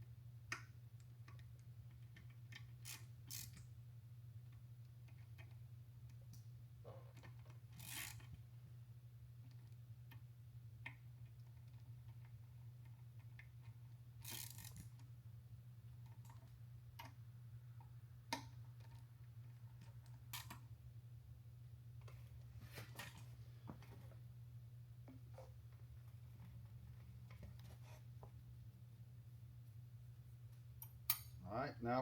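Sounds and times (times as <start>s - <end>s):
rustles of handling tools: 22.0s - 24.3s
light clicks of metal parts: 30.5s - 31.4s.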